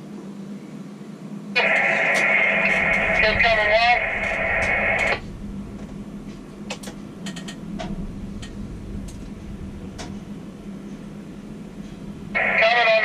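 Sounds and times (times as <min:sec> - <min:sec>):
crane machinery humming: 0:01.2 - 0:13.0.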